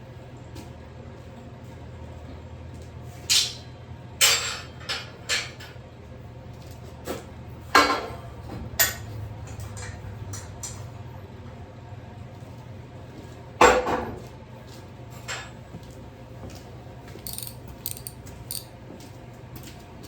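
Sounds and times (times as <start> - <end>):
sharp metal clanks: 17.2 - 18.7.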